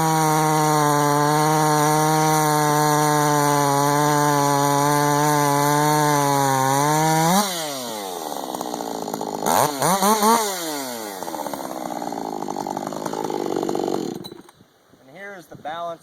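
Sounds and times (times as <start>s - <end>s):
chainsaw revving: 0.0s - 14.5s.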